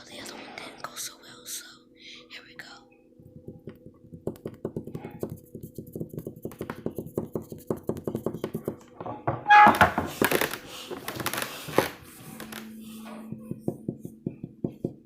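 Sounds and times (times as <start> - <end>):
rapid light tapping: 3.2 - 8.9.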